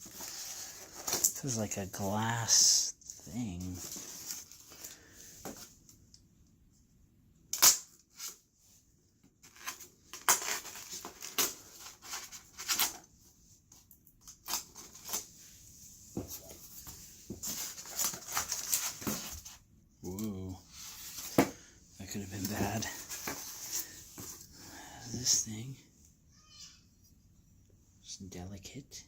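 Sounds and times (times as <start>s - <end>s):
wrapping rustling and tearing: 0.0s - 5.6s, 9.4s - 13.1s, 16.3s - 21.4s.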